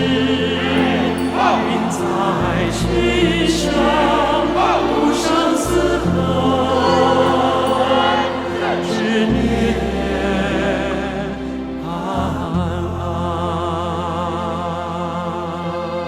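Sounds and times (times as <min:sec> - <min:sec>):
choir singing held notes: 0:00.0 - 0:12.5
sustained bass chords: 0:00.0 - 0:16.0.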